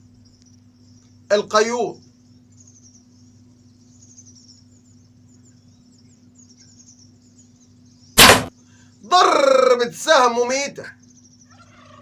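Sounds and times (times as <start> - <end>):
bow firing crack: 8.2 - 8.5.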